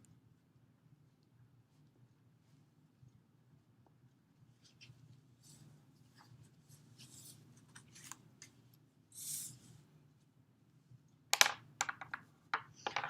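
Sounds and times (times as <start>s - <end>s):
low steady room hum: 0.0s - 13.0s.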